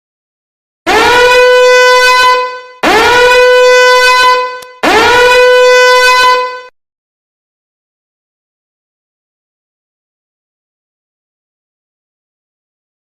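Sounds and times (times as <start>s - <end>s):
buzzy horn blasts: 0.9s - 6.7s.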